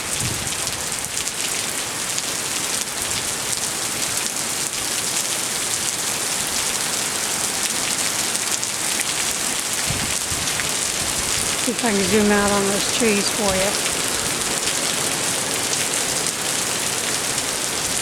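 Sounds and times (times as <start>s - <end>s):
heavy rain pouring: 0.0s - 18.0s.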